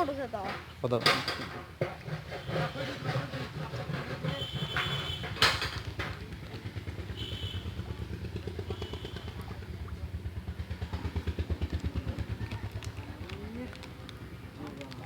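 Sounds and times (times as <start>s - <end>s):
small engine running: 5.9s - 14.4s.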